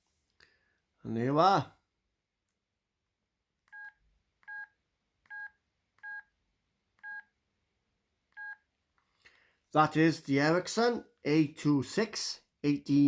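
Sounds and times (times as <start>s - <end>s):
phone keypad beeps: 3.7s - 6.3s, 7.0s - 7.3s, 8.4s - 8.6s.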